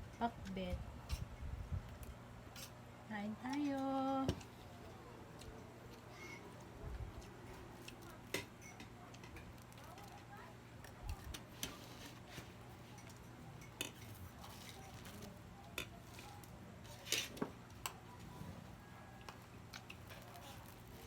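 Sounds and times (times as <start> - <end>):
cutlery clinking against dishes: 8.4 - 9.5, 12.9 - 15.0.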